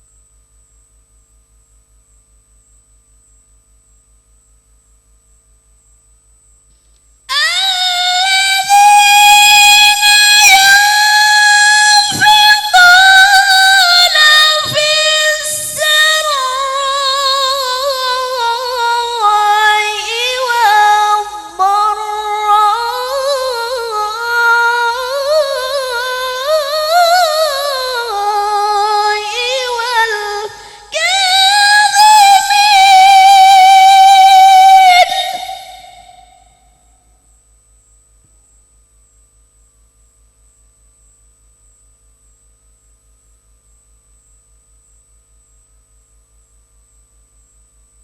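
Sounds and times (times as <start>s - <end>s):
person reciting in melismatic chant: 7.3s - 36.4s.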